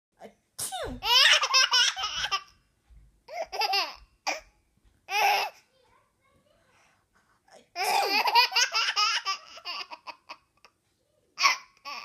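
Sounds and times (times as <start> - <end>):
fake sneezes: 0.6 - 1.0
small child laughing: 1.0 - 2.5, 7.8 - 10.8.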